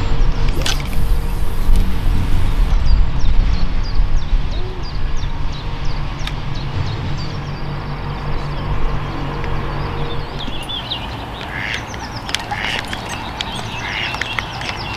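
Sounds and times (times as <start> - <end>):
small bird chirping: 0.0 - 3.0, 10.2 - 14.9.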